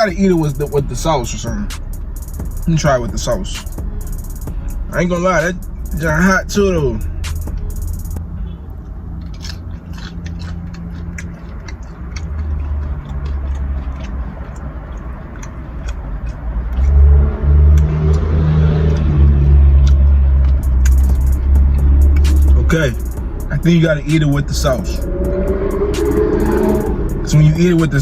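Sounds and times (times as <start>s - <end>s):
low bass line: 0.0s - 14.8s, 16.0s - 28.0s
close-up chewing and crunching: 8.6s - 22.3s.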